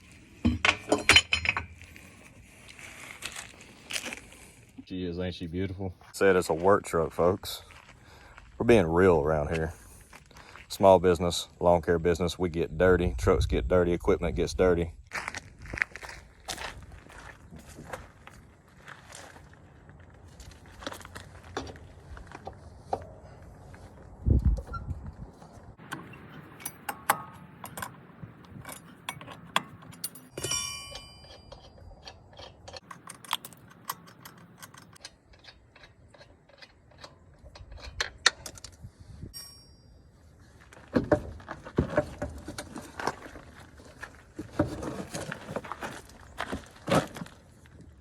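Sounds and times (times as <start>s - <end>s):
metal tools clicking and knocking: 0.4s - 1.8s, 25.9s - 38.8s
ringing metal clink: 30.0s - 32.0s, 39.3s - 40.1s.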